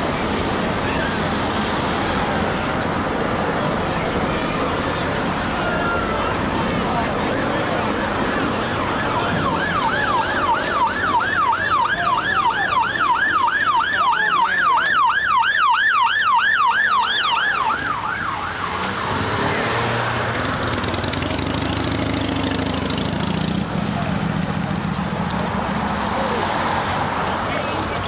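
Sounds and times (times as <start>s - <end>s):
street noise rush: 0.0s - 28.0s
emergency siren yelping: 0.7s - 21.4s.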